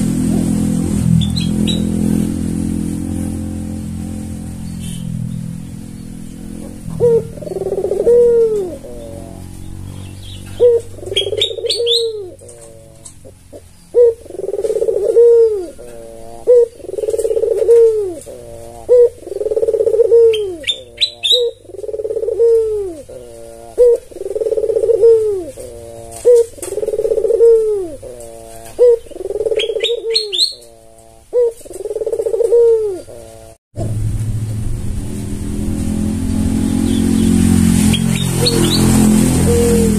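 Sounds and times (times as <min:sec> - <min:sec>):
high bird chirps: 0:01.2 - 0:02.0, 0:04.6 - 0:15.1, 0:18.9 - 0:22.2, 0:28.2 - 0:31.7, 0:36.6 - 0:39.9
dove cooing: 0:05.8 - 0:33.6, 0:36.8 - 0:39.9.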